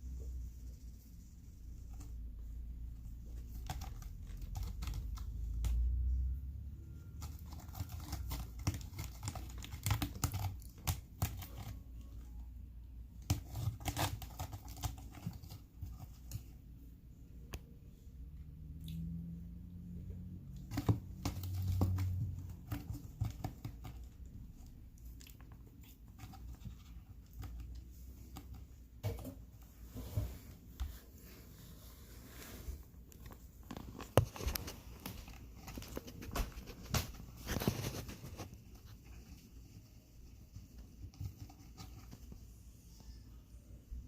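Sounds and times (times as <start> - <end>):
cat chewing and tearing prey: 7.1 - 11.8, 13.2 - 16.4.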